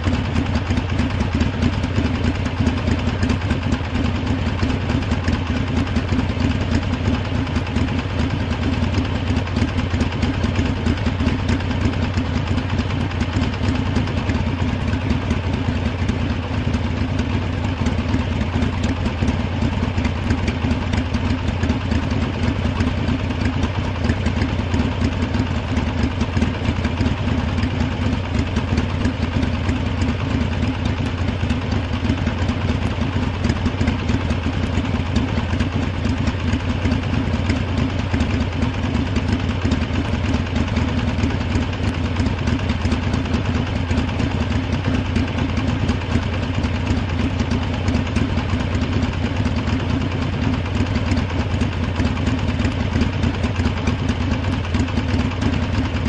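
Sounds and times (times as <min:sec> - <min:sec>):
motorcycle engine idling: 0:00.0 - 0:56.0.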